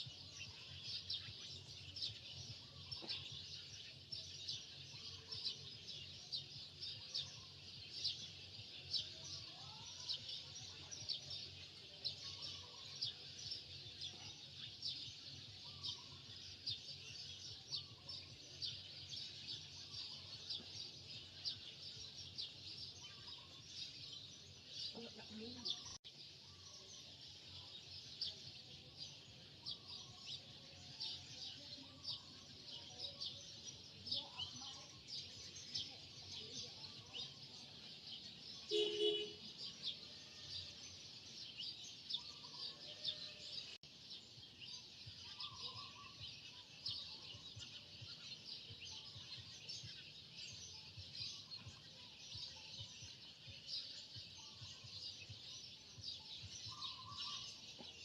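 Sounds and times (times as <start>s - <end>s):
small birds chirping: 0.0s - 58.0s.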